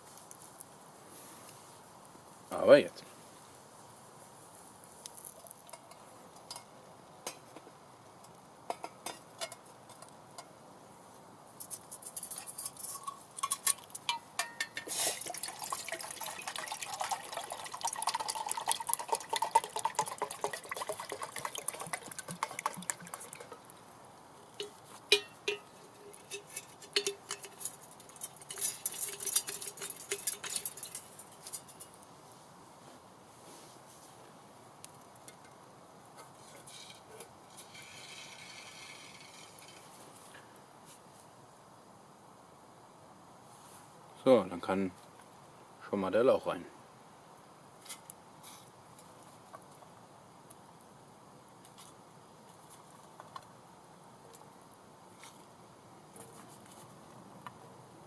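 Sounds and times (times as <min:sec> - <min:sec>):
water pouring into metal pot: 0:15.1 - 0:23.6.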